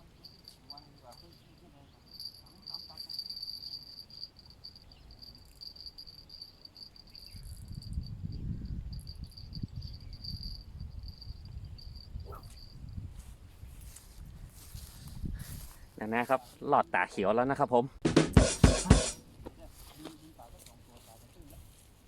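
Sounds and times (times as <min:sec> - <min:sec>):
insects trilling: 0:00.0 - 0:13.0.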